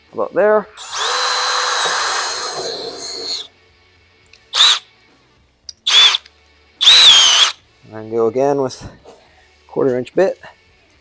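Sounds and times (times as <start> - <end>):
power drill drilling: 0.8 - 3.5, 4.6 - 4.8, 5.9 - 6.2, 6.8 - 7.6.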